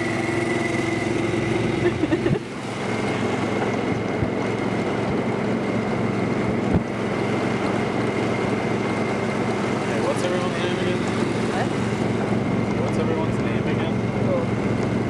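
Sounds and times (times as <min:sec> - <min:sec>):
wind rushing over microphone: 0:00.0 - 0:10.0
vehicle engine running: 0:00.0 - 0:15.0.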